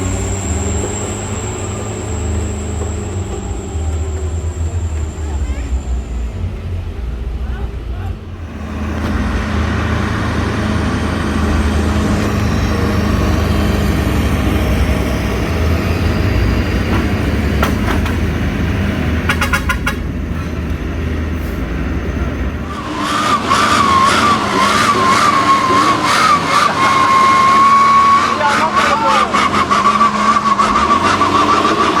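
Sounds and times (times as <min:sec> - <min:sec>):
wavering high tone: 0:00.0 - 0:07.0
truck engine humming: 0:00.0 - 0:32.0.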